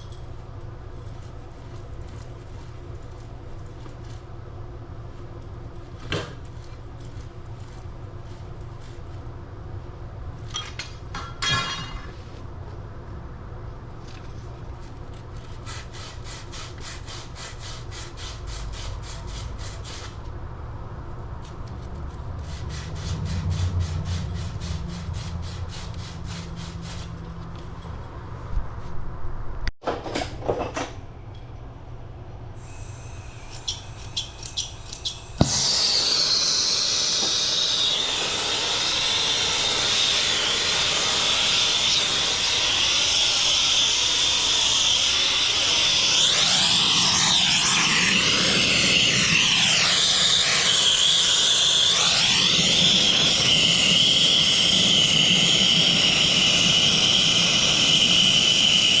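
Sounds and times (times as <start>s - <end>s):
torch burning with loud hiss: 32.6s - 59.0s.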